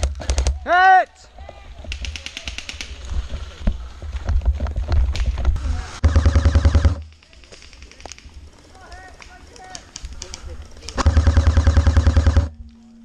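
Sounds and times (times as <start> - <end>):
airsoft gun firing: 6.0 - 7.8, 10.9 - 12.6.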